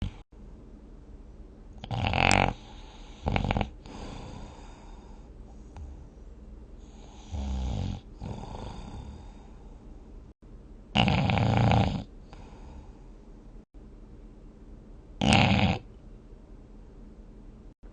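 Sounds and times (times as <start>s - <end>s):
person snoring: 1.8s - 5.9s, 6.8s - 9.8s, 11.0s - 13.0s, 15.2s - 15.9s.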